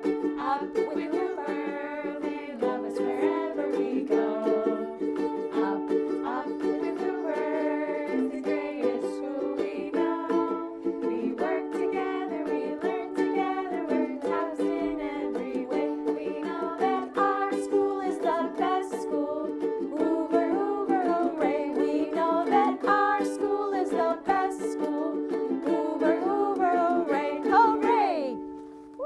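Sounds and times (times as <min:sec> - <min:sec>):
girls singing: 0:00.0 - 0:29.0
strummed string instrument: 0:00.0 - 0:29.0.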